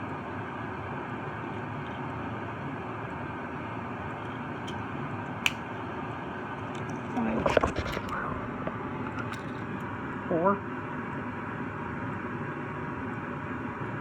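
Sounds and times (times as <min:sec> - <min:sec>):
low hum: 0:06.6 - 0:10.3.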